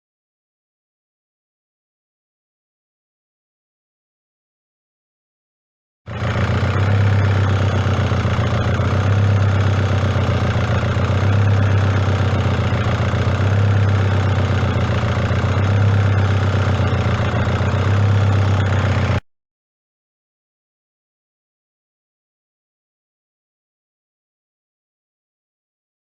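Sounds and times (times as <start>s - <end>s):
diesel engine idling: 6.1s - 19.2s.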